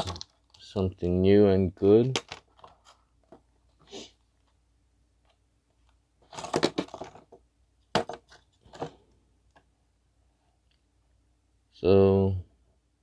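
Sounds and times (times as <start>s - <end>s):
crackly rattling packaging clicks: 0.0s - 0.6s, 2.0s - 3.0s.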